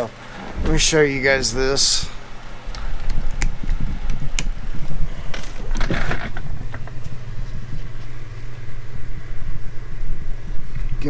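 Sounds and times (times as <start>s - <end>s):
electric fan humming: 0.0s - 11.0s
rustling scraping handling: 5.2s - 7.1s.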